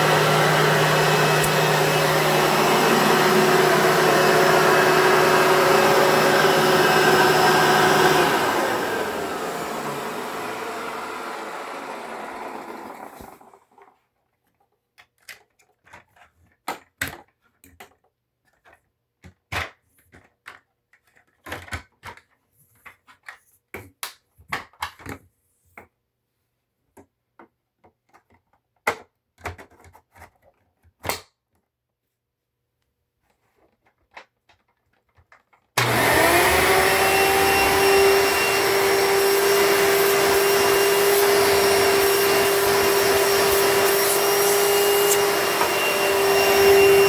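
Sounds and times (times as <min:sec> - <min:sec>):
vacuum cleaner motor spinning down: 0:00.0 - 0:13.9, 0:35.8 - 0:47.0.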